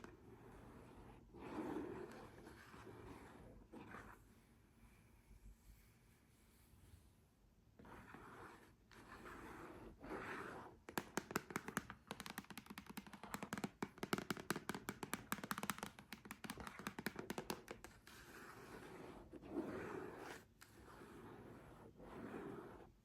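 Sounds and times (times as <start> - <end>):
soft scratching: 0.0 - 10.8, 15.8 - 23.0.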